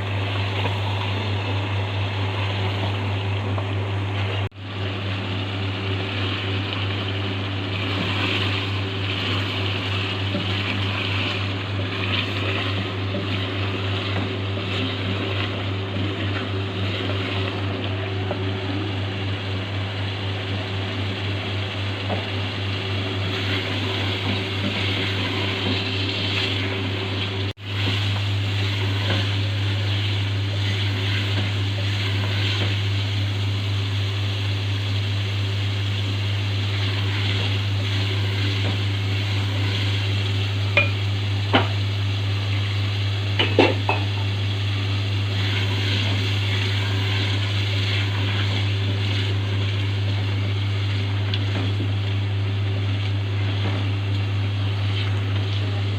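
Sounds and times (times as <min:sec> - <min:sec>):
food sizzling in oil: 0:00.0 - 0:55.9
utensil clinking on pot: 0:40.8 - 0:41.0.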